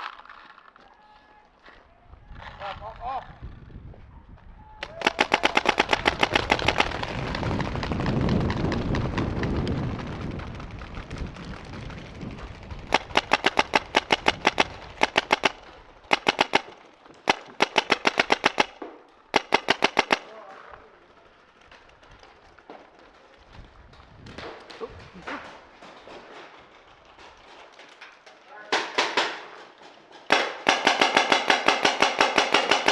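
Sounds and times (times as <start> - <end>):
paintball marker rapid shots: 4.8 - 7.9, 12.9 - 20.3, 30.3 - 32.9.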